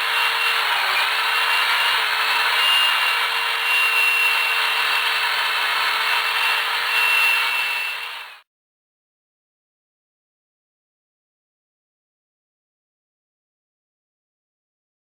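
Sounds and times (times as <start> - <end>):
power tool motor whining on wood: 0.0 - 8.4.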